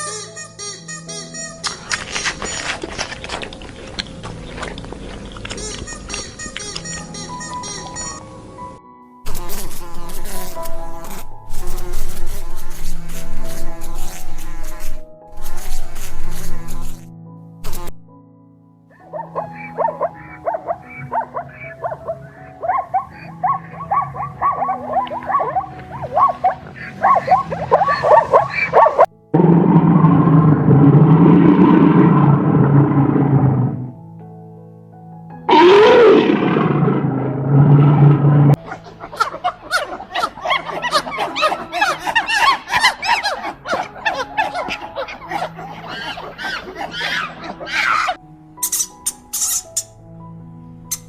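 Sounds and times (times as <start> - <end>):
animals squeaking: 0.0 - 8.2, 19.1 - 29.1, 38.6 - 50.0
background music: 0.0 - 51.0
loud dense rumbling: 29.4 - 34.0.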